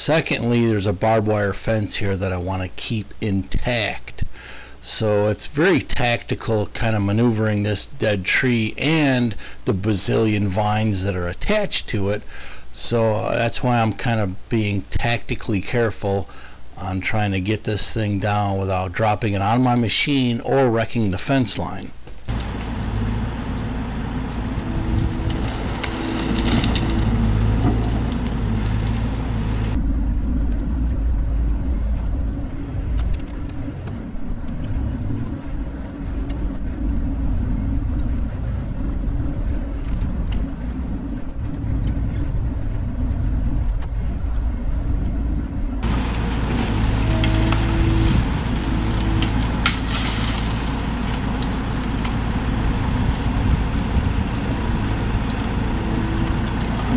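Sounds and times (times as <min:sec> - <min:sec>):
excavator diesel engine droning: 0:22.3 - 0:56.9.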